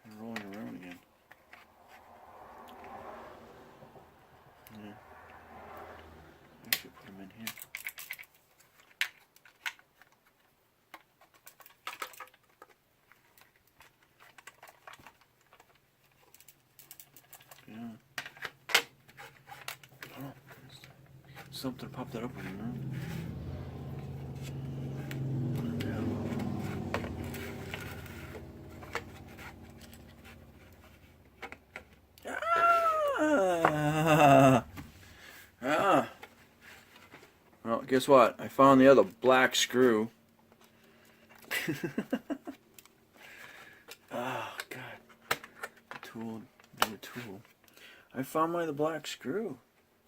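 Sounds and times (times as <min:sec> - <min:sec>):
small parts clicking and scratching: 0:06.8 - 0:32.0.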